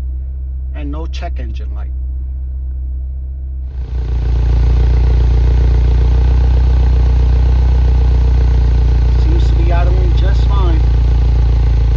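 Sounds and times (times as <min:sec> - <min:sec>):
car engine idling: 0:03.7 - 0:11.9.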